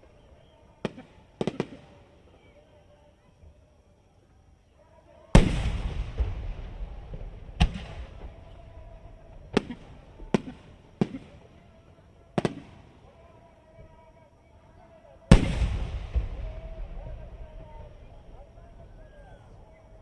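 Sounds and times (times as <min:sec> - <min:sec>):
firework shells booming: 0:05.4 - 0:11.8, 0:12.4 - 0:14.0, 0:15.3 - 0:20.0.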